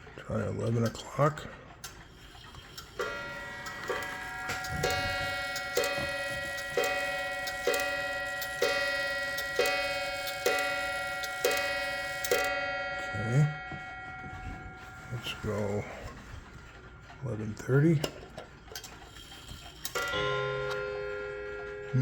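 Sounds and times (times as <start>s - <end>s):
clock gong striking: 2.9s - 18.3s, 19.9s - 22.0s.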